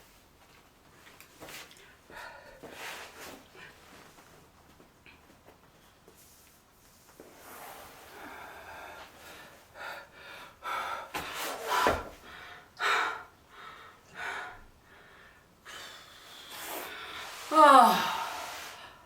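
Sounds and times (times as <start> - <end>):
woman breathing and gasping: 8.1 - 19.0.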